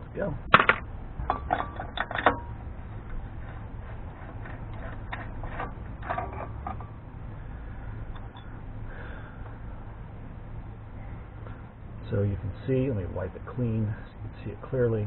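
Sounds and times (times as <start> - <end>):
steady low hum: 0.0 - 15.0
metallic tool clinks and scrapes: 4.2 - 7.0.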